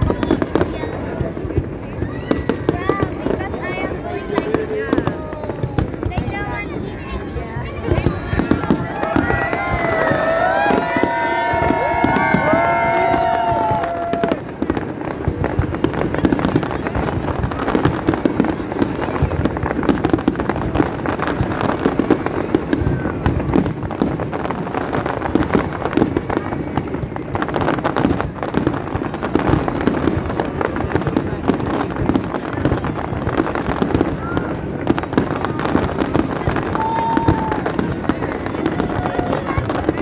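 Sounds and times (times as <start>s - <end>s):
fireworks crackling and popping: 0.0s - 40.0s
rising firework whistle: 8.4s - 14.6s.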